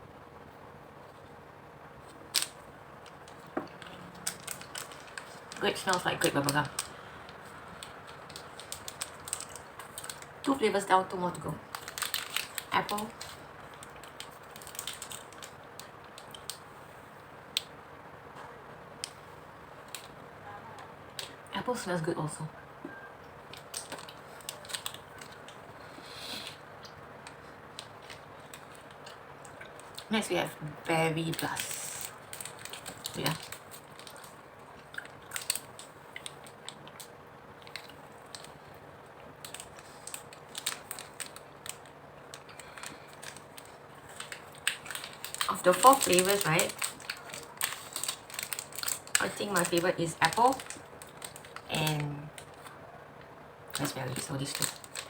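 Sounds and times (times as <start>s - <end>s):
plastic wrapper crinkling: 2.0s - 16.7s, 19.8s - 20.2s, 23.4s - 52.8s, 53.7s - 55.0s
mouth chewing gummy candy: 22.9s - 30.1s, 31.3s - 55.0s.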